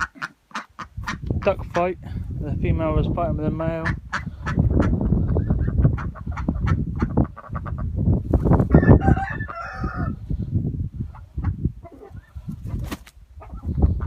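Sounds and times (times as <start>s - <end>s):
rooster crowing: 8.7s - 10.2s.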